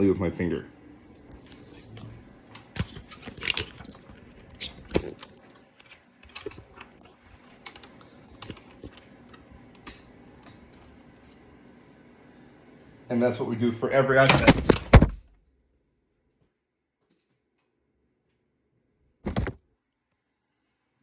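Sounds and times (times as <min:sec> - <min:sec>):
handling tablet: 0:01.1 - 0:11.5, 0:19.3 - 0:19.6.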